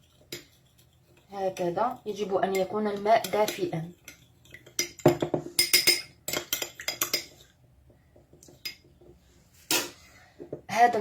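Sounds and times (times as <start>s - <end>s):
spoon clinking against glass: 4.8s - 7.3s.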